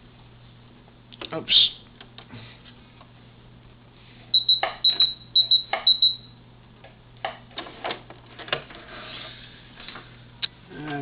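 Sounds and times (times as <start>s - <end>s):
faint steady hum: 0.0s - 11.0s
sewing machine beeping: 4.4s - 6.3s.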